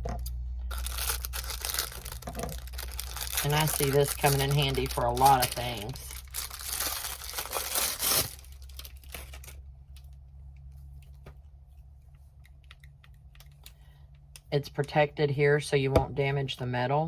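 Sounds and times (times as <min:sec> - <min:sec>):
plastic packaging crinkling: 0:00.6 - 0:10.1.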